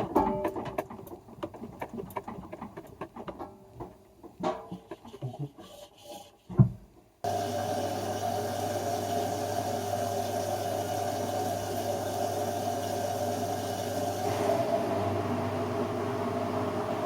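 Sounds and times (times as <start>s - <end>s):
washing machine running: 7.2s - 17.0s.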